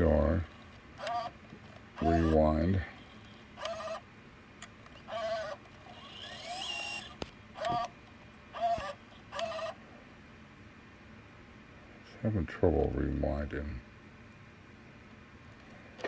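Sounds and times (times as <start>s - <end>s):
camcorder tape whirring: 0.0s - 10.0s.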